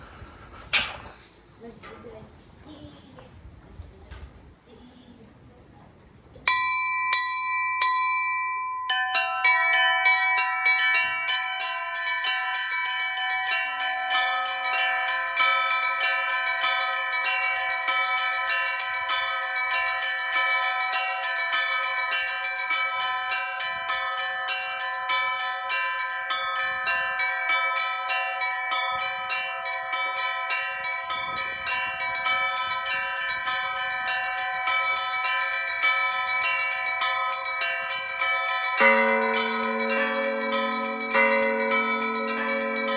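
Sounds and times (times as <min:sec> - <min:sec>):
church bells ringing a peal: 0:06.5 - 0:42.9
deeper bell ringing: 0:28.5 - 0:42.9.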